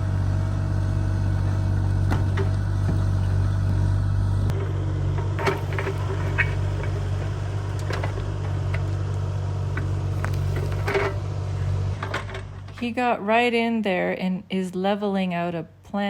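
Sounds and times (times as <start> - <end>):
excavator diesel engine running: 0.0 - 13.4.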